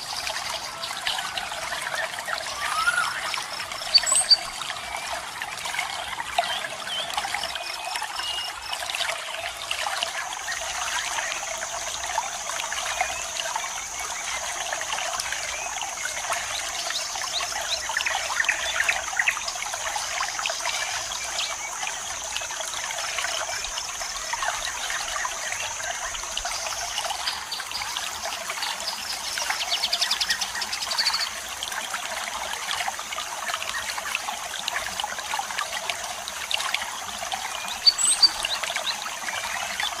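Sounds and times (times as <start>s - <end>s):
bird chirps: 3.8s - 4.5s, 37.7s - 38.5s.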